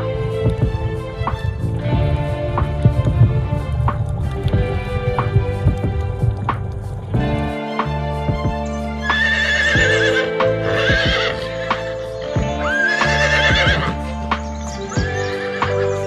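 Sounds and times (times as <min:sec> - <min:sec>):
background music with clicking beat: 0:00.0 - 0:16.0
horse whinnying: 0:09.1 - 0:13.9.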